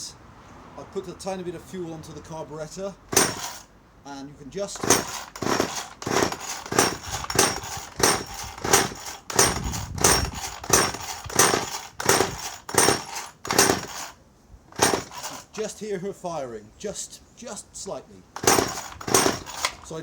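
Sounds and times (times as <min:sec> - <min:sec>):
chainsaw engine firing briefly: 0:03.1 - 0:03.6, 0:04.8 - 0:14.1, 0:14.8 - 0:15.5, 0:18.4 - 0:19.8
recoil starter cord rips: 0:03.1 - 0:03.6, 0:04.7 - 0:15.7, 0:18.4 - 0:20.0.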